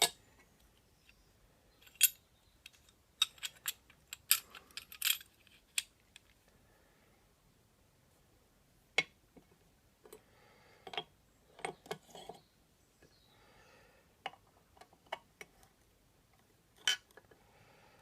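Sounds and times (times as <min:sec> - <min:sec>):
metal parts clicking and clinking: 0:01.8 - 0:06.4.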